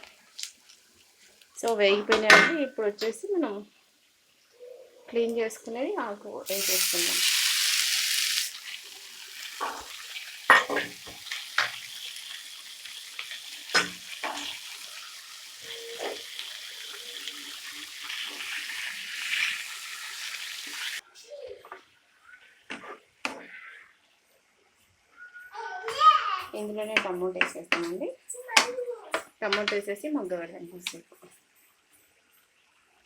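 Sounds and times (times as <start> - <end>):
hot oil sizzling in a pan: 6.4 - 21.0.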